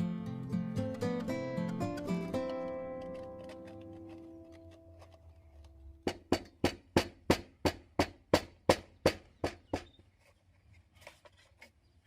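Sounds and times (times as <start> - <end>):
sharp knocks: 6.0 - 9.9.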